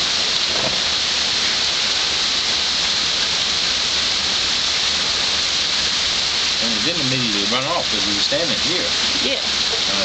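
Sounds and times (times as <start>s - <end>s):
heavy rain pouring: 0.0s - 10.0s.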